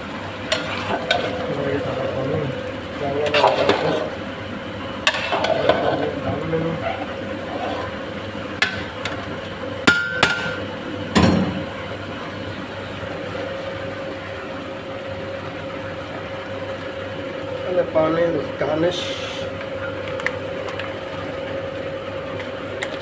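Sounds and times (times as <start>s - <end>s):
steady hum: 0.0s - 23.0s
metal cookware clanking: 0.5s - 2.0s, 3.1s - 4.2s, 5.0s - 8.0s, 9.9s - 11.7s.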